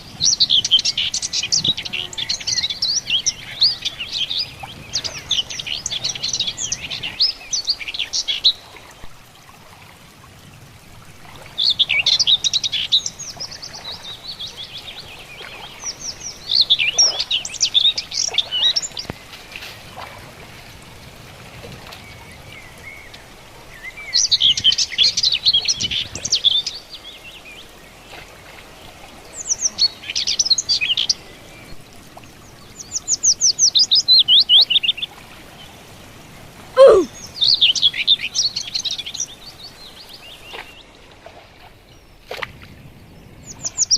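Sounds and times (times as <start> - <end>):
outdoor background noise: 0.0 - 43.9
bird chirping: 36.8 - 37.1.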